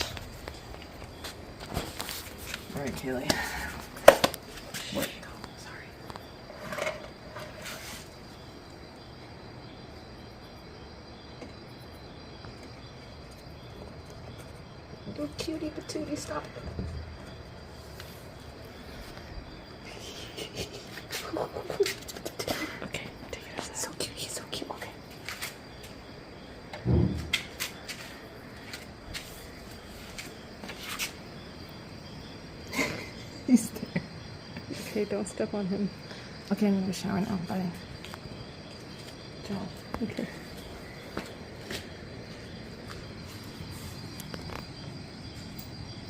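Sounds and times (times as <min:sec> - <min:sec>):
insect hiss: 0:00.0 - 0:46.0
thin high insect trill: 0:00.0 - 0:46.0
low thump: 0:26.8 - 0:27.5.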